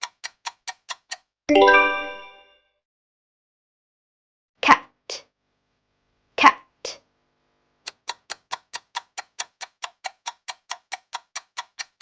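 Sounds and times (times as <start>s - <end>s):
clock-like ticking: 0.0s - 1.2s, 7.9s - 12.0s.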